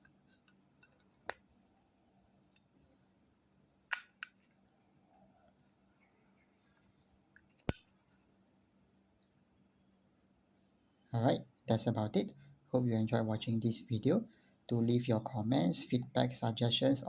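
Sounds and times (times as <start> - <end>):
lighter metallic clinks: 7.7 - 8.0.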